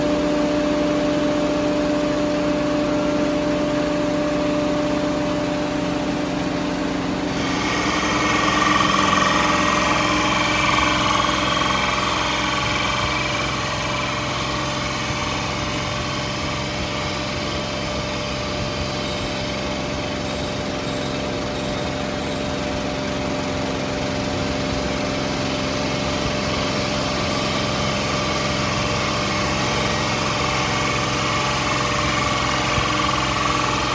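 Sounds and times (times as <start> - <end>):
rough hissing: 7.3 - 19.7
machine spindle whining: 7.3 - 33.9.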